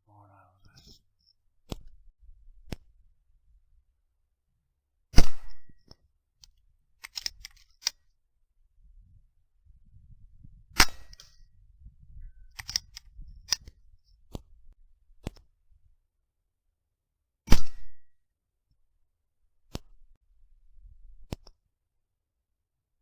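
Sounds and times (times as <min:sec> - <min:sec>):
rifle mechanism clicks: 0:06.4 - 0:08.0, 0:12.6 - 0:13.7.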